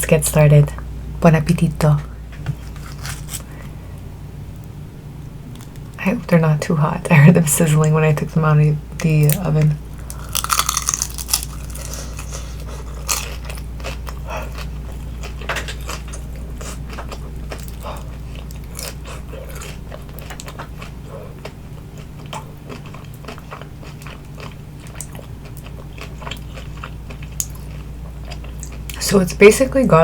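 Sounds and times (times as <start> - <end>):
crunching crispy pastry: 2.6 - 3.6, 9.2 - 28.9
soft chewing: 10.0 - 29.0.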